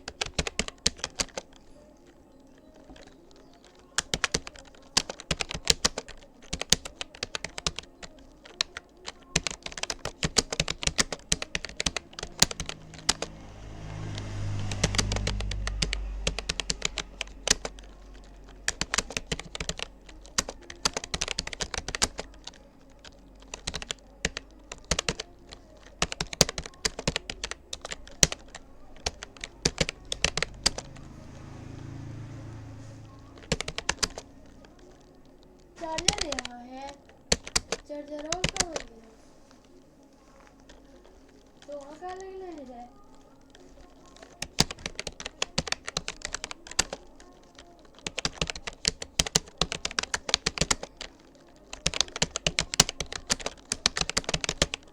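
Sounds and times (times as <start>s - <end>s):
low hum: 11.5s - 20.4s, 27.6s - 35.8s.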